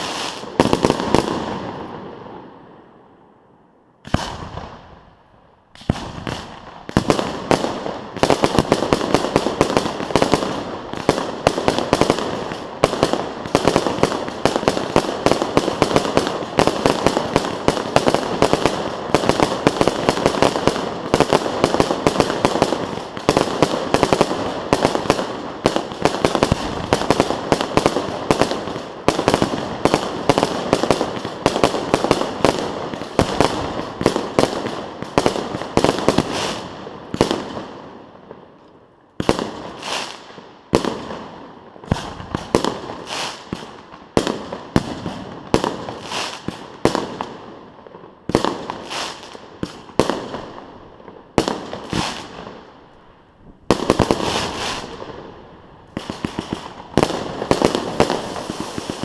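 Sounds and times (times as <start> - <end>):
fireworks bangs and crackles: 0.0 - 3.0, 4.0 - 59.0.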